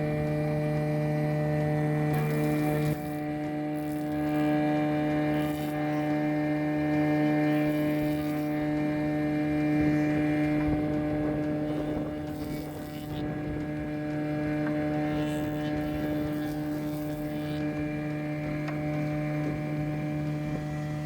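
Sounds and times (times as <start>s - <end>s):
planer machine humming: 0.0s - 21.0s.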